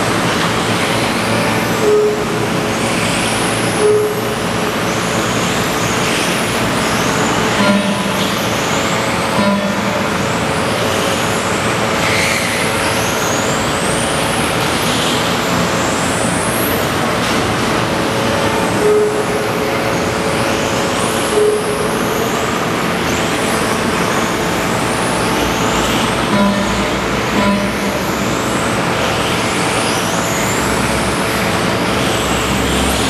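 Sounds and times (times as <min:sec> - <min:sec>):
electric motors whining: 0:00.0 - 0:33.0
steady dense noise: 0:00.0 - 0:33.0.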